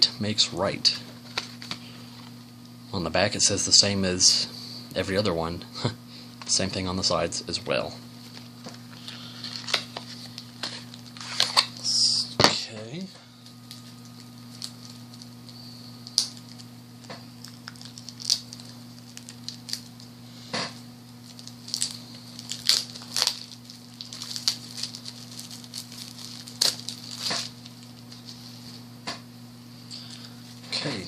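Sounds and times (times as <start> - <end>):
plastic wrapping crinkling: 8.2 - 11.8, 13.4 - 20.1, 21.1 - 28.8.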